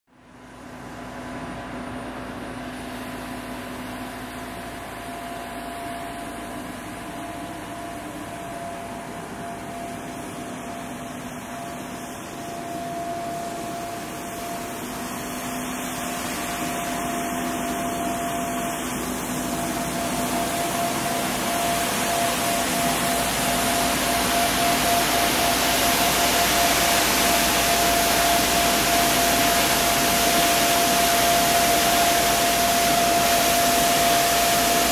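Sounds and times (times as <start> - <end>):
street sweeper whining hum and hiss: 0.1 - 34.9.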